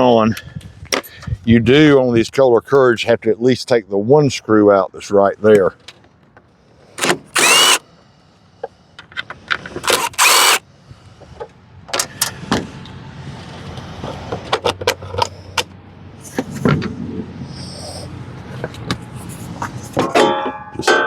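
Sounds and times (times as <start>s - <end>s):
loud rasping bursts: 7.0s - 7.8s, 9.8s - 10.6s.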